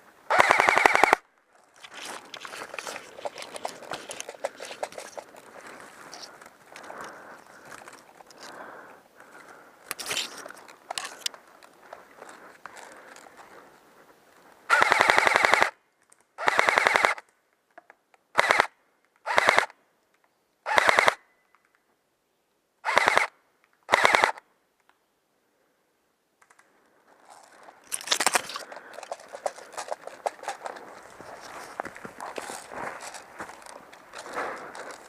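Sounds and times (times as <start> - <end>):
airsoft gun firing bursts: 0.3 - 1.2, 14.7 - 15.7, 16.4 - 17.2, 18.4 - 18.7, 19.3 - 19.7, 20.7 - 21.2, 22.9 - 23.3, 23.9 - 24.4
rustling footsteps: 1.5 - 13.6, 27.1 - 35.0.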